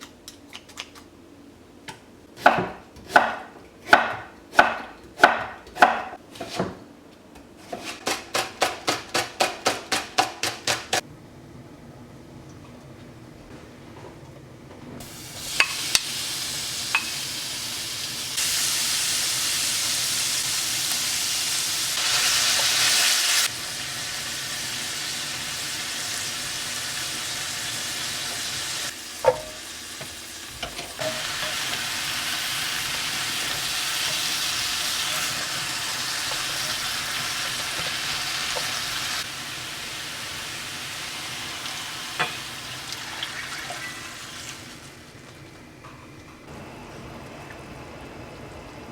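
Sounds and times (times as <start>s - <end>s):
food sizzling in a pan: 15.0s - 45.2s.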